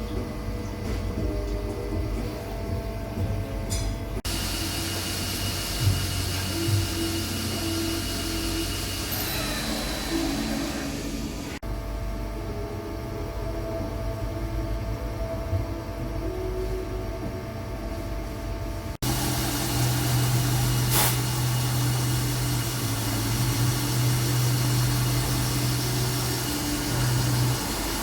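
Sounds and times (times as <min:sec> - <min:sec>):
machinery humming: 0:00.0 - 0:28.0
short hiss: 0:20.9 - 0:21.4.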